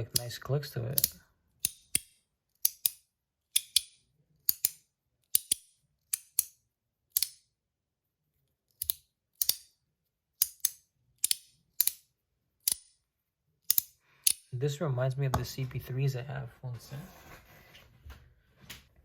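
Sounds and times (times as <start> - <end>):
metal fidget slider clicking: 0.9 - 7.4, 8.7 - 9.7, 10.4 - 12.0, 13.6 - 14.5.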